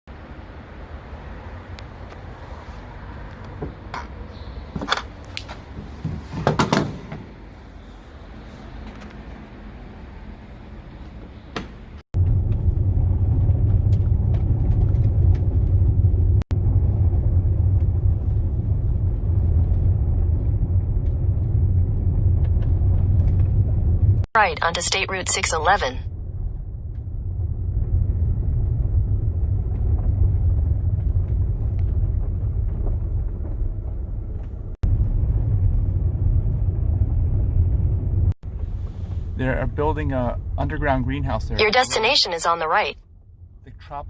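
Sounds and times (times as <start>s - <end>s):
car driving rumble from inside: 12.2s - 24.3s, 26.1s - 41.5s.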